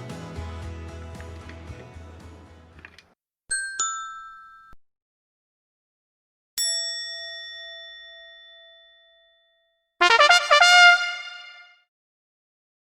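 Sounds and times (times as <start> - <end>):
brass fanfare: 10.0 - 11.8.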